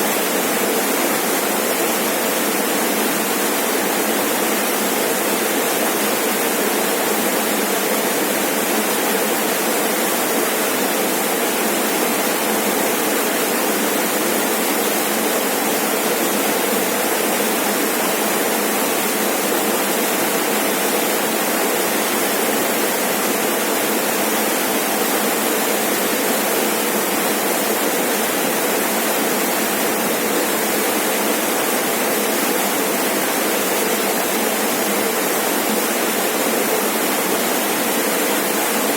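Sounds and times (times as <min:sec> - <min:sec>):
waterfall pouring and splashing: 0:00.0 - 0:38.9.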